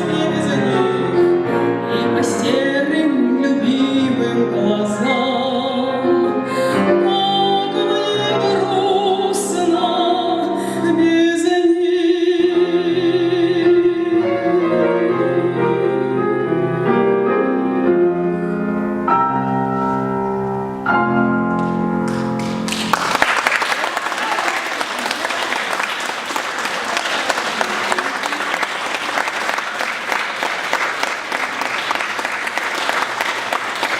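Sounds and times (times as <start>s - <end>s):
woman singing with vibrato: 0.0s - 1.1s, 2.0s - 16.5s
grand piano: 0.0s - 33.9s.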